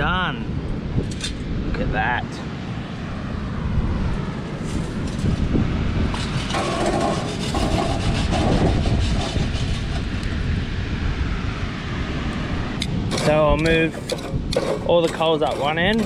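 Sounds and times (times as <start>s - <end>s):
wind on microphone: 0.0s - 16.0s
metal scraping and clattering: 6.1s - 10.1s, 13.1s - 16.0s.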